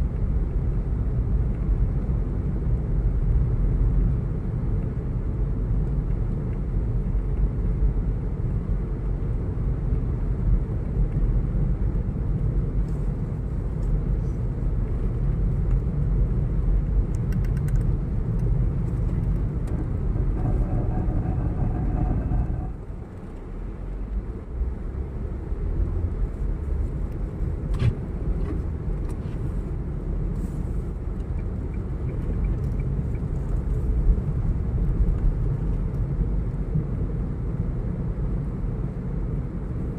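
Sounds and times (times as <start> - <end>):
vehicle rumble from inside: 0.0 - 39.9
faint whine: 18.9 - 24.1.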